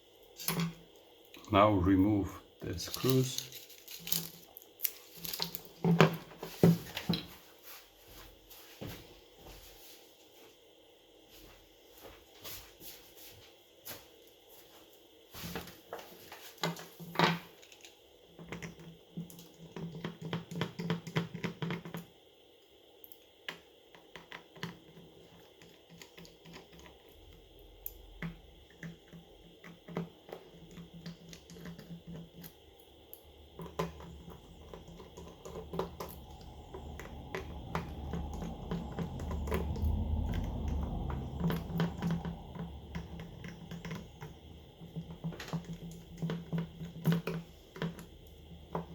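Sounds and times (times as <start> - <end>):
small tools clicking and tapping: 2.8 - 6.2, 16.3 - 22.1, 23.0 - 48.9
low rumble: 36.1 - 44.8.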